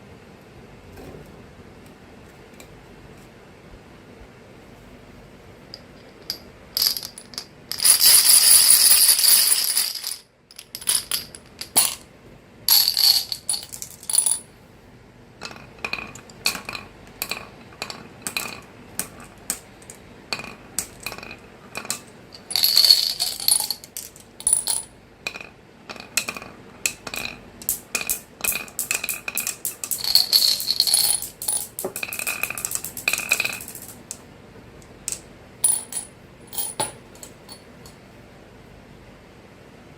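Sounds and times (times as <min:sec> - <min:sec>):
marbles clicking on track: 0:26.2 - 0:34.1.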